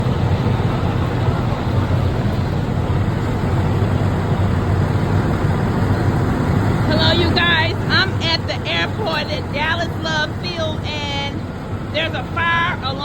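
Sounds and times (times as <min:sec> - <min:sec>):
engines idling: 0:00.0 - 0:13.0
traffic rumble: 0:00.0 - 0:13.0.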